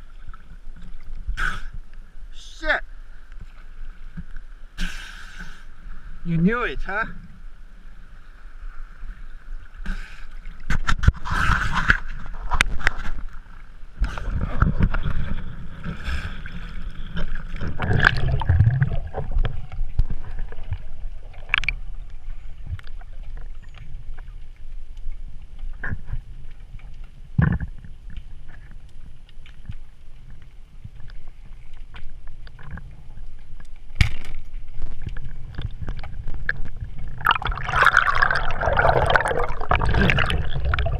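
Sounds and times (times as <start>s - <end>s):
water sloshing and gurgling: 0.0s - 40.9s.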